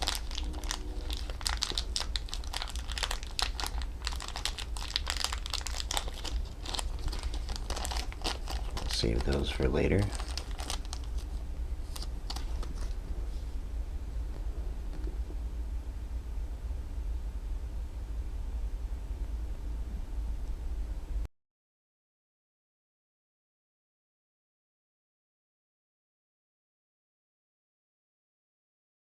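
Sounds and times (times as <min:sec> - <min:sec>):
plastic bags crinkling: 0:00.0 - 0:13.0
low background hum: 0:00.0 - 0:21.3.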